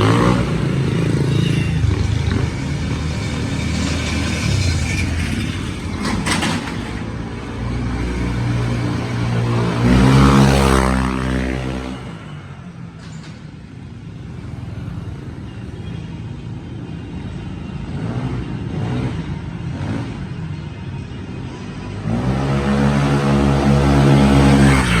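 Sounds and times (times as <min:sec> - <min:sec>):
scooter engine revving: 0:00.0 - 0:06.7.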